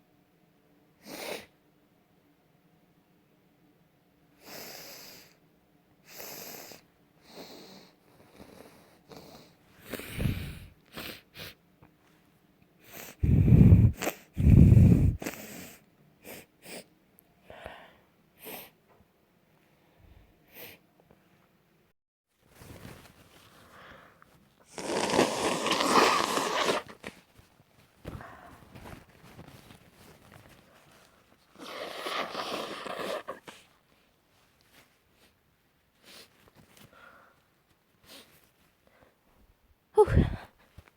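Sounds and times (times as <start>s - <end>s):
person sniffing: 12.9s - 16.9s, 24.7s - 27.2s, 31.5s - 33.7s
person sneezing: 24.7s - 27.0s, 40.0s - 40.5s.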